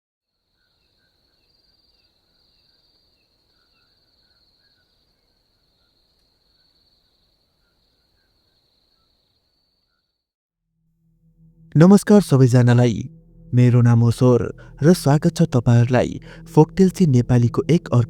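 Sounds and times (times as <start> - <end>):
cricket chirps: 0.4 - 10.2.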